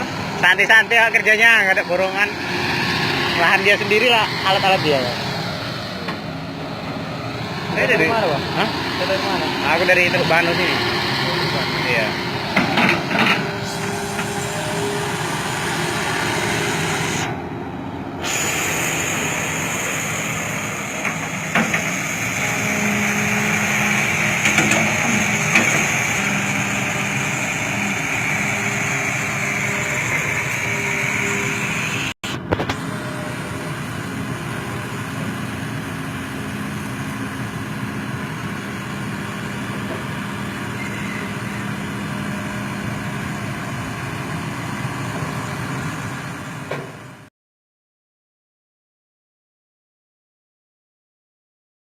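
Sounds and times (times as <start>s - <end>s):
high-pitched whine: 0.0s - 35.9s
diesel engine running: 0.0s - 47.3s.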